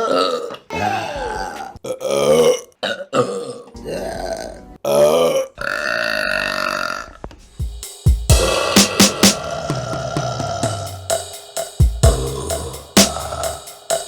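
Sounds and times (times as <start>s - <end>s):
music with heavy drum hits: 7.6s - 14.0s.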